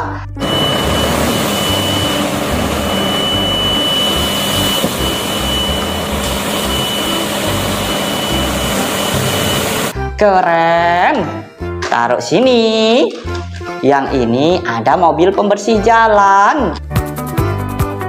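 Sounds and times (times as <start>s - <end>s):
machine running with high whine: 0.4s - 10.0s.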